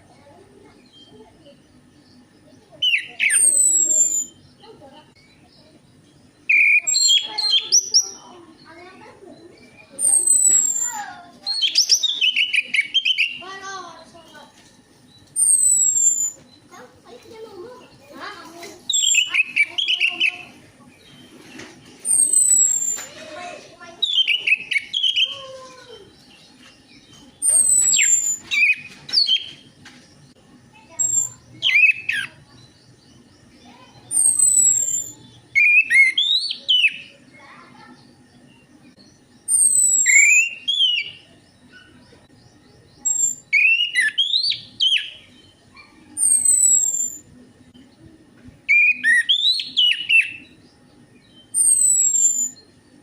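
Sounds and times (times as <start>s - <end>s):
thrush singing whistled phrases: 2.8s - 4.4s, 6.5s - 8.3s, 9.8s - 13.5s, 15.4s - 16.4s, 18.9s - 20.5s, 22.1s - 23.0s, 24.0s - 25.4s, 27.4s - 29.5s, 31.0s - 32.4s, 34.1s - 37.1s, 39.5s - 41.2s, 43.0s - 45.3s, 46.2s - 47.2s, 48.7s - 50.5s, 51.5s - 52.6s.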